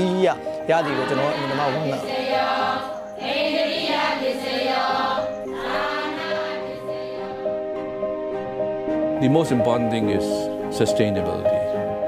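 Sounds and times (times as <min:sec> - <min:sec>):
choir-like singing: 0:00.6 - 0:07.8.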